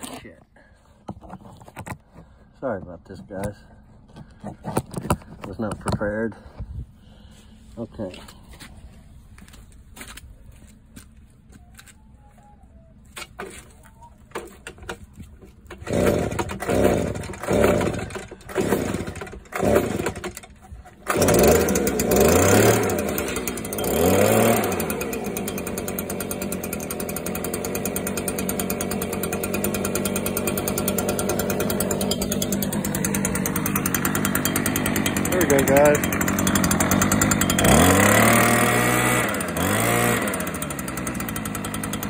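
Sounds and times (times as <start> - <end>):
recoil starter pulls: 1.0 - 6.5, 13.2 - 42.0
leaf blower engine revving and idling: 13.4 - 42.0.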